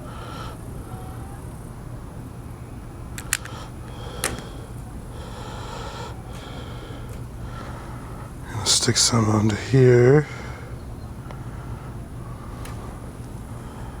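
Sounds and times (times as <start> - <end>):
sharp clicks of small parts: 3.2 - 3.6.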